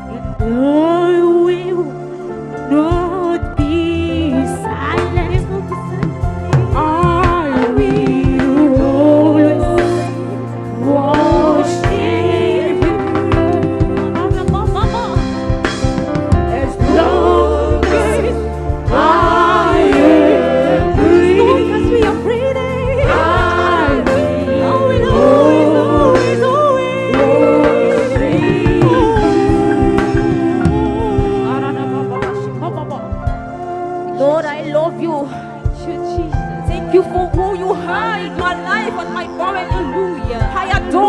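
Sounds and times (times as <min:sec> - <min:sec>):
gospel choir singing: 0:00.0 - 0:33.1, 0:36.1 - 0:41.0
instrumental backing with bass: 0:00.0 - 0:41.0.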